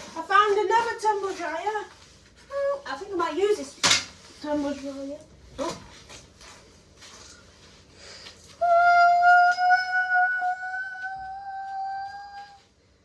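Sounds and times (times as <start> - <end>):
soft rustling: 0.0 - 8.7.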